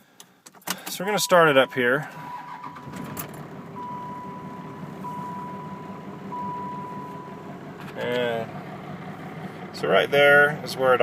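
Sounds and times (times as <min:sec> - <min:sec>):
diesel engine rough idle: 0:01.1 - 0:11.0
electronic warning chime beeps: 0:03.8 - 0:07.4.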